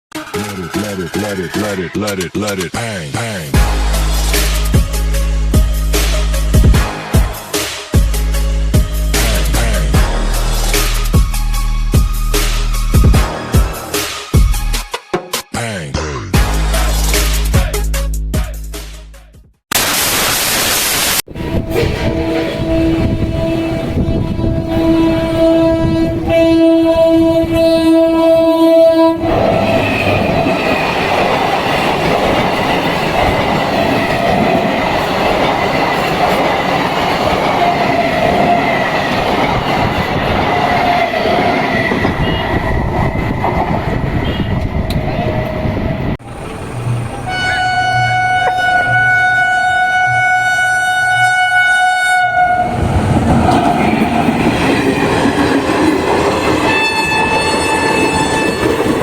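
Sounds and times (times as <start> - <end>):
train wheels rumbling and clattering: 21.3 - 27.7, 29.2 - 47.4, 52.6 - 59.0
train horn: 21.3 - 31.0, 32.6 - 42.8, 44.2 - 45.7, 46.8 - 52.9, 56.5 - 59.0.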